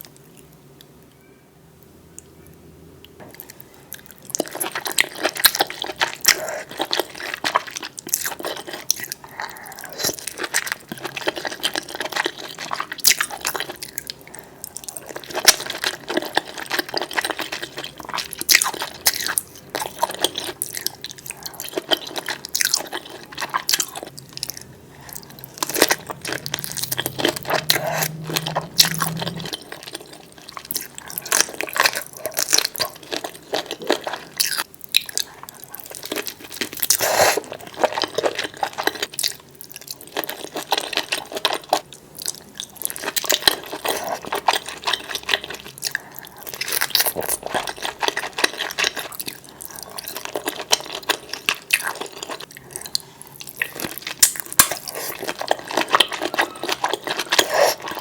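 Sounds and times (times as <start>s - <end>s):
wet chewing and slurping: 3.4s - 58.0s.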